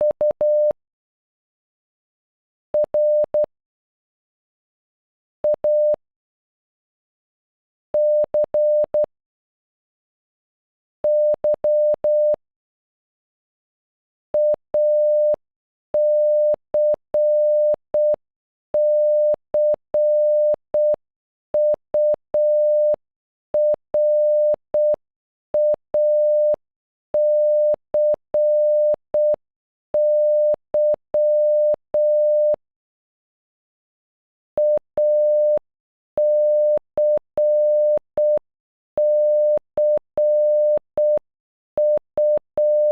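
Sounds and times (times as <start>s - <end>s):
morse code beeps: 11.1s - 12.4s, 16.0s - 18.2s, 18.8s - 21.0s, 21.6s - 23.0s, 23.6s - 25.0s, 25.6s - 26.6s, 27.2s - 29.4s, 30.0s - 32.6s, 34.6s - 35.6s, 36.2s - 38.4s, 39.0s - 41.2s, 41.8s - 42.9s.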